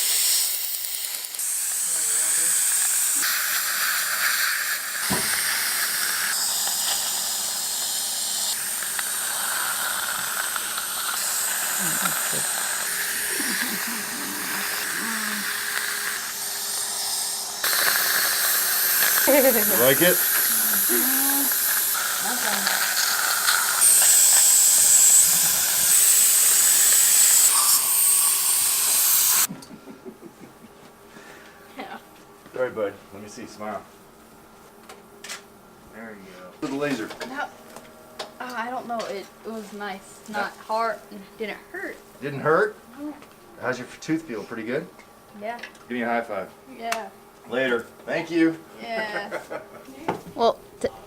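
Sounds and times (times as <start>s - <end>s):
dental suction and water spray hiss: 0.0s - 29.5s
high thin whine: 0.6s - 29.5s.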